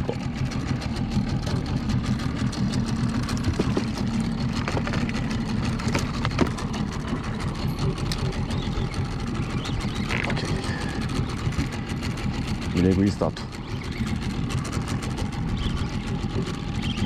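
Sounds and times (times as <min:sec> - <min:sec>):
outboard motor idling: 0:00.0 - 0:17.0.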